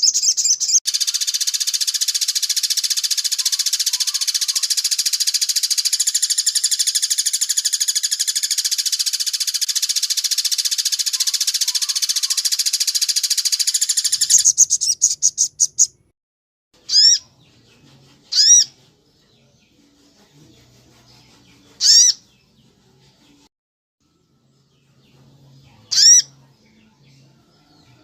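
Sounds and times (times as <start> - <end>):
bird call notes: 0.0 - 15.9
bird trilling: 0.0 - 16.0, 16.9 - 17.2, 18.3 - 18.7, 21.8 - 22.2, 25.9 - 26.3.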